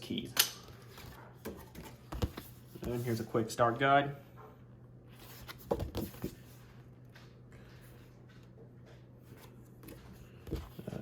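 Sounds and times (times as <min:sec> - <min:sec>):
paper rustling and tapping: 0:00.8 - 0:03.0, 0:05.4 - 0:06.4.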